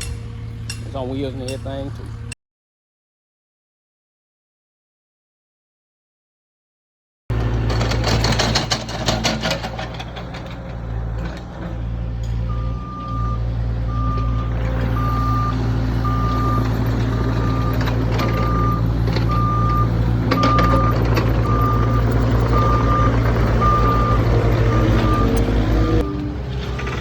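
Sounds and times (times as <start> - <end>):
diesel engine running: 0.0 - 2.4, 7.3 - 27.0
backup alarm beeping: 12.5 - 26.4.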